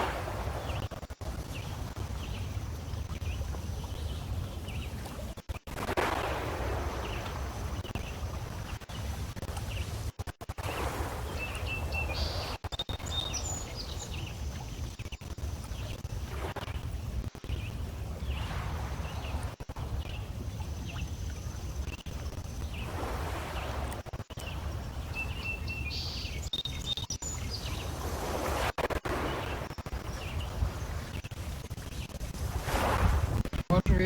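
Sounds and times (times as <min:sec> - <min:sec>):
waves washing against stones: 0:00.0 - 0:00.8, 0:32.3 - 0:34.0
birds chirping: 0:10.7 - 0:16.0, 0:24.4 - 0:28.2.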